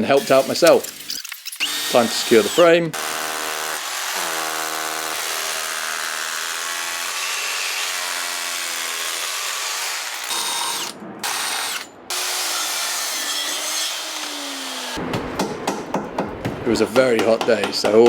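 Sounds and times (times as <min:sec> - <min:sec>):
power drill motor whining: 0:01.6 - 0:08.0.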